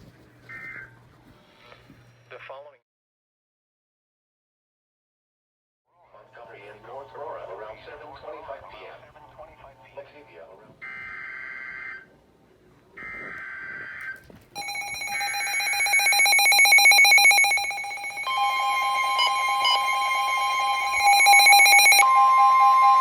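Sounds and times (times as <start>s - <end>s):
buzzy digital data tones: 14.6s - 22.0s
steady electronic alert tone: 14.6s - 23.0s.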